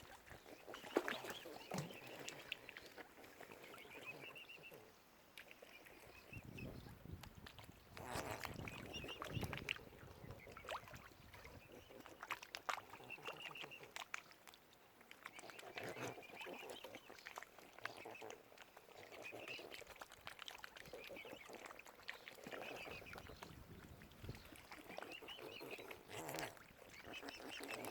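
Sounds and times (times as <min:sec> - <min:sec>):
waterfowl calling: 0:24.4 - 0:27.9.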